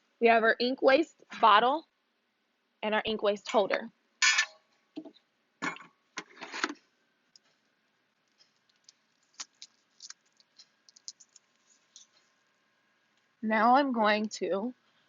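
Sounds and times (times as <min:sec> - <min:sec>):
plastic parts rustling and scraping: 0:06.2 - 0:06.8, 0:08.2 - 0:12.4.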